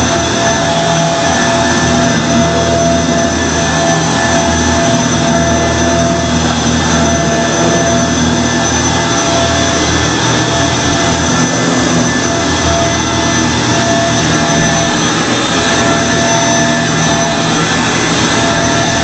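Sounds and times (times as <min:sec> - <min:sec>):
vacuum cleaner running: 0:00.0 - 0:19.0.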